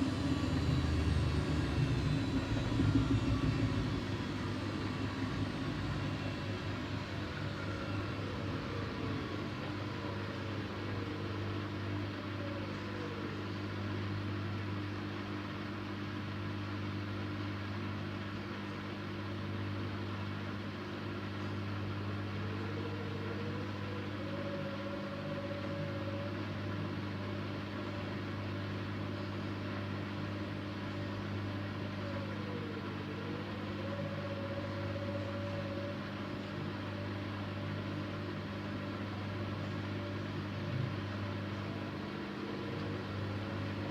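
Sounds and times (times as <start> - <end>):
washing machine motor hum: 0.0 - 43.9
washing machine whine: 0.0 - 43.9.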